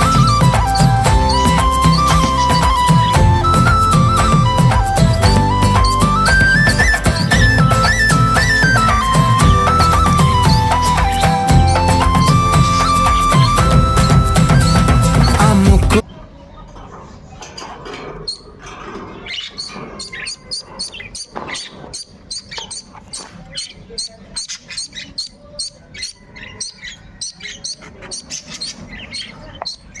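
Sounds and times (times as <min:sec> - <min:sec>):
budgerigars chattering: 0:00.0 - 0:15.5, 0:19.2 - 0:30.0
music: 0:00.0 - 0:16.0.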